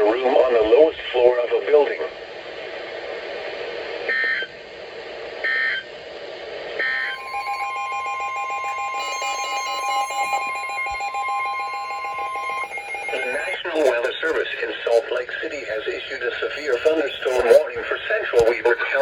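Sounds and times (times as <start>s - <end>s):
steady electronic alert tone: 6.8s - 14.4s
warbling data tones: 6.8s - 15.0s, 15.6s - 17.5s
radio static: 11.9s - 19.0s.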